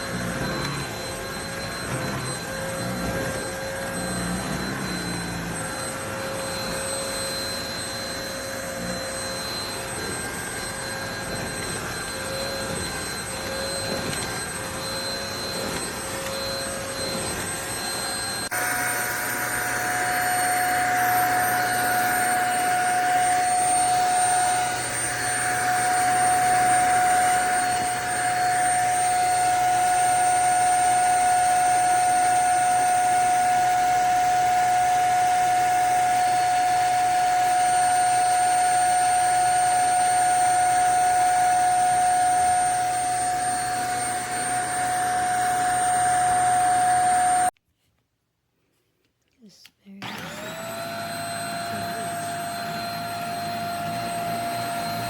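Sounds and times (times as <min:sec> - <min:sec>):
vacuum cleaner motor whine: 0:00.0 - 0:47.6, 0:50.0 - 0:55.0.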